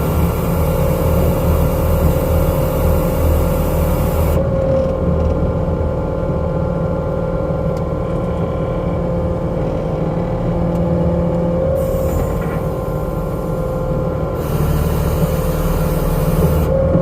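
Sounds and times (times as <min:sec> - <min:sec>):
constant whine: 0:00.0 - 0:17.0
diesel engine running under load: 0:00.0 - 0:17.0.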